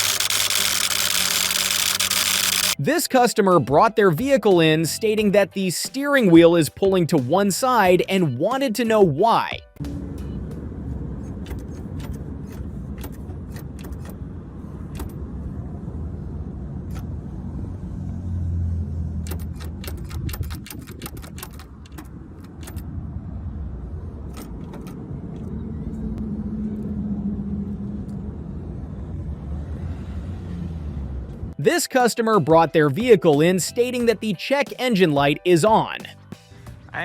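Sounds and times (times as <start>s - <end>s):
sharp clicks and ticks: 0.0s - 2.8s, 19.2s - 22.9s
car engine rumbling: 9.8s - 31.6s.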